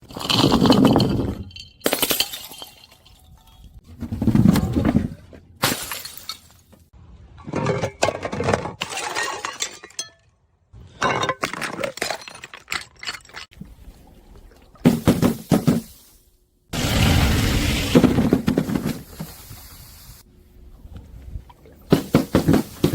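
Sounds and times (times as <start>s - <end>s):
glass bottles smashing: 0.1s - 3.8s, 5.6s - 6.7s.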